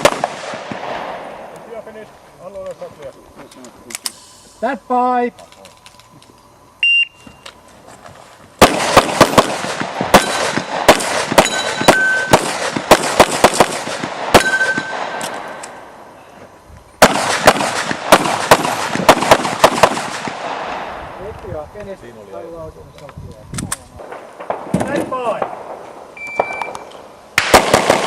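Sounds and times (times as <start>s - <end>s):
shot timer beep: 6.8s - 7.4s, 14.4s - 15.0s, 26.2s - 26.8s
bullets clanging on steel targets: 11.4s - 12.3s, 14.4s - 15.3s.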